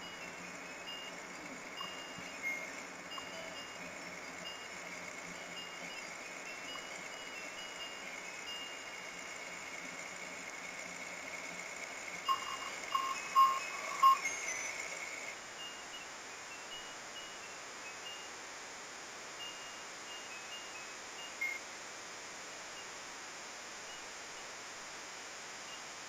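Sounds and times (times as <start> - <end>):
ice cream truck chime melody: 0.0 - 9.9, 12.2 - 16.0
steady background hiss: 0.0 - 26.0
short beeps: 12.3 - 14.8.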